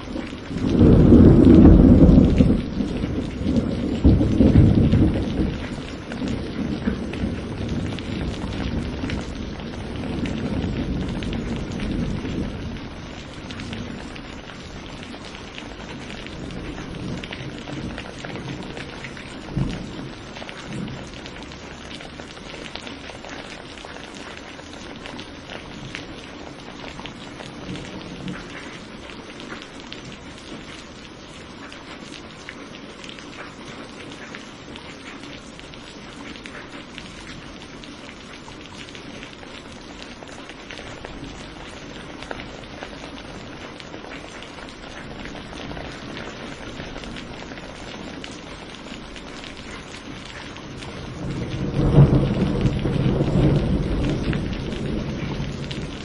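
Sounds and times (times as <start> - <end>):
thunder rumbling: 0.0 - 24.0, 36.8 - 56.0
heavy rain pattering: 0.0 - 56.0
loud low thunder thud: 0.6 - 9.4, 51.2 - 56.0.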